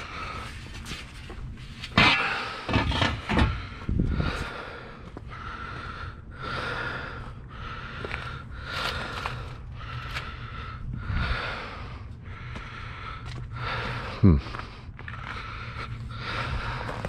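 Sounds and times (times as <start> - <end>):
heavy breathing: 0.0 - 0.9, 2.0 - 17.0
scrap metal clanking: 1.8 - 3.7.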